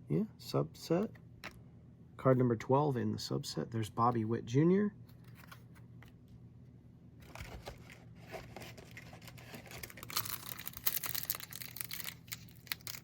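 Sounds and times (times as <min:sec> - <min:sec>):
foil wrapper crinkling: 0:07.2 - 0:13.0.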